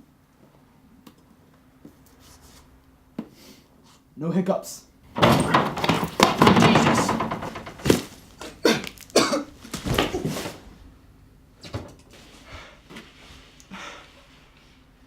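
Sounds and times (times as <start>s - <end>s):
man coughing and gasping: 8.4s - 9.5s.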